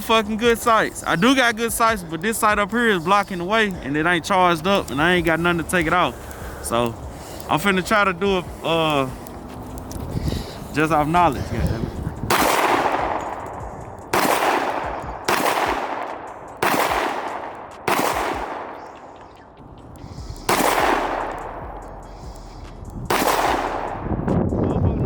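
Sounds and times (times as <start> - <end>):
pistol gunshots: 12.2 - 19.4, 20.3 - 22.3, 23.1 - 24.2.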